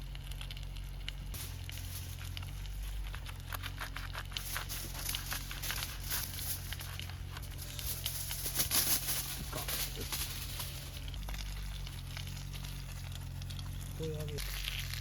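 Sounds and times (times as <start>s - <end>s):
bacon and eggs sizzling: 0.0s - 8.6s, 9.2s - 15.0s
fire crackling and popping: 0.0s - 15.0s
low hum: 0.0s - 15.0s.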